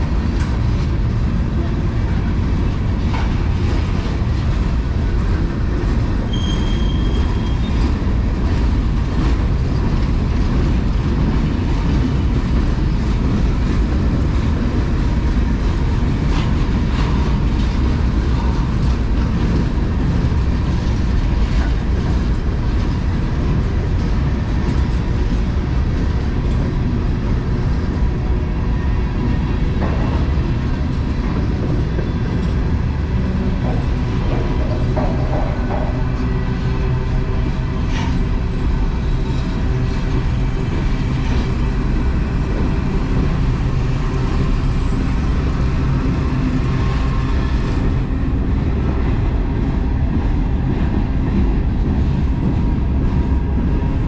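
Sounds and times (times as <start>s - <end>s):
train wheels rumbling on rail: 0.0s - 54.0s
faint wheel squeals: 6.3s - 7.8s.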